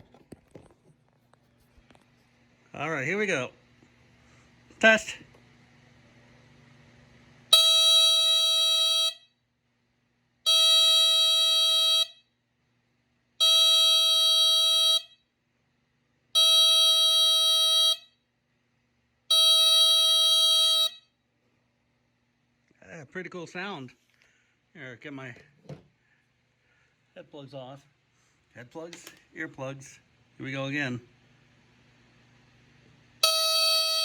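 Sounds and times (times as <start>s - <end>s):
smoke alarm horn blasts: 7.5s - 9.5s, 10.4s - 12.4s, 13.4s - 15.4s, 16.3s - 18.3s, 19.3s - 21.2s, 33.2s - 34.0s.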